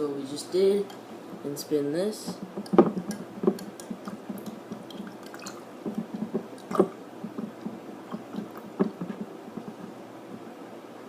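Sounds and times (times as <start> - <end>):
water sloshing in glass jar: 2.3 - 9.9
small soft knocks: 2.3 - 10.5
glass jar knocking: 2.4 - 9.8.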